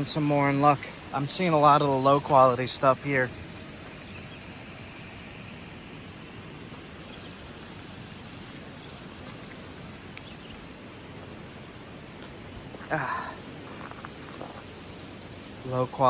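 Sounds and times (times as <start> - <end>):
vehicle road and engine noise: 0.0 - 16.0.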